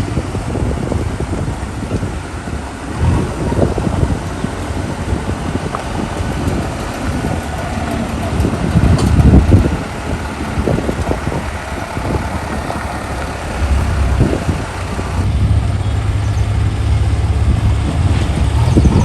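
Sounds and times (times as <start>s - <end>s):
heavy diesel engine running: 0.5s - 15.3s.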